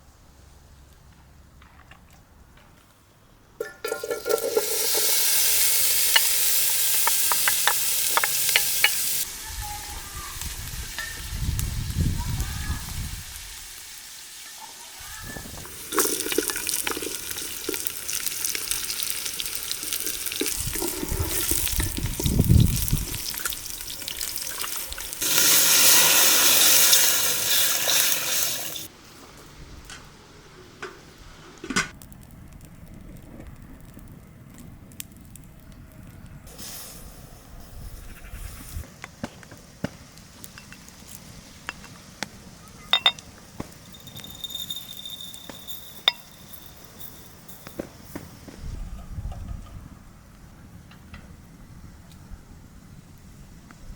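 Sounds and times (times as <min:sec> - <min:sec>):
water pouring and splashing: 0:03.6 - 0:09.4, 0:15.3 - 0:28.9.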